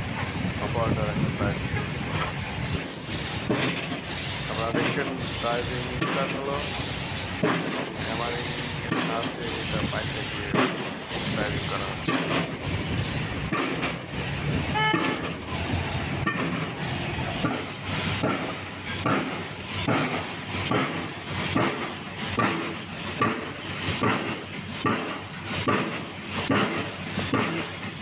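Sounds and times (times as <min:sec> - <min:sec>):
pile-driving hammer blows: 0:00.1 - 0:28.0
short horn-like tone: 0:14.7 - 0:15.0.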